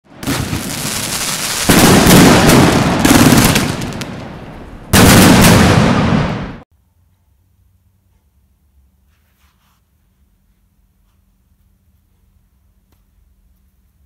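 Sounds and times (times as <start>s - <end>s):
fireworks bursting with hiss: 0.1s - 6.6s.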